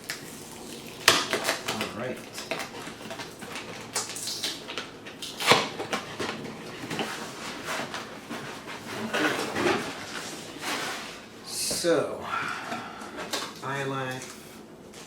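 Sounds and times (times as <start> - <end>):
cardboard packaging rustling: 0.0 - 11.4.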